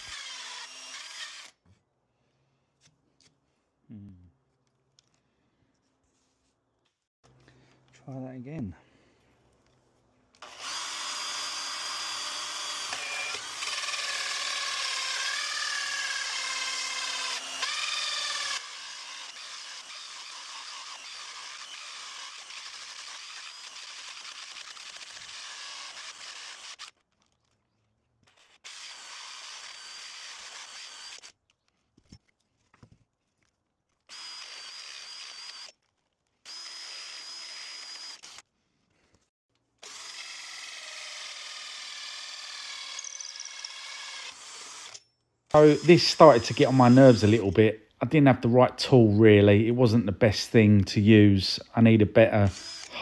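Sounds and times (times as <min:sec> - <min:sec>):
power drill cutting into door: 0:00.0 - 0:01.6, 0:10.4 - 0:27.0, 0:28.2 - 0:31.4, 0:34.1 - 0:35.8, 0:36.4 - 0:38.5, 0:39.8 - 0:47.1, 0:52.5 - 0:53.0.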